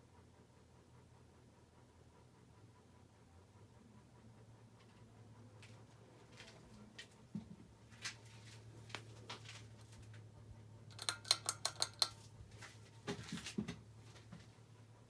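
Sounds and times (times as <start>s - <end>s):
ceiling fan motor hum: 0.0s - 15.0s.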